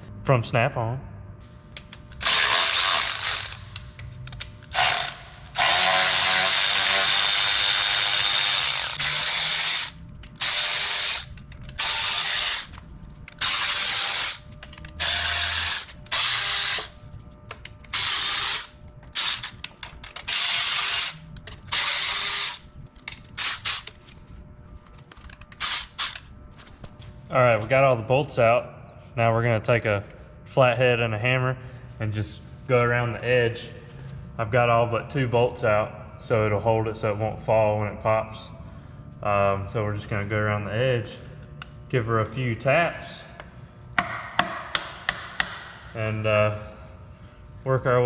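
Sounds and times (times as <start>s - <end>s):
electric ratchet whirring: 1.8s - 17.0s, 17.8s - 24.2s, 25.2s - 26.3s.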